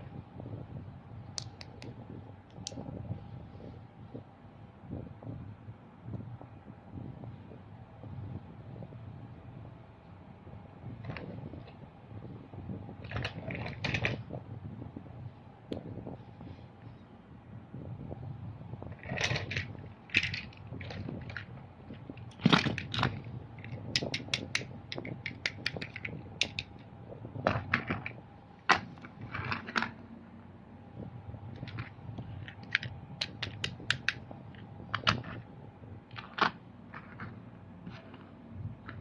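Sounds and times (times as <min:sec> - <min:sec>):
faint steady hum: 0:00.0 - 0:39.0
plastic toy trucks clicking and rattling: 0:13.0 - 0:14.2, 0:18.9 - 0:26.8, 0:27.4 - 0:30.0, 0:31.6 - 0:35.5, 0:36.1 - 0:39.0.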